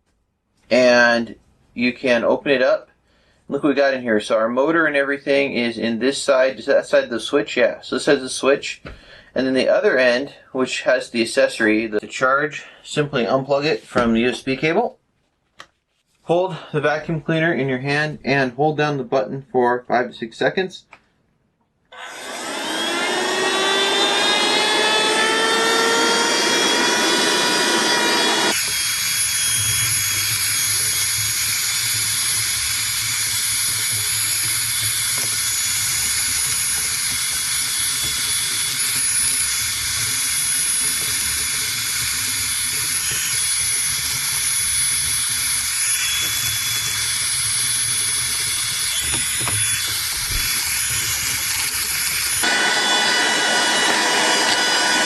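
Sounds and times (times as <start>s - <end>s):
handheld vacuum motor whining: 21.9s - 55.0s.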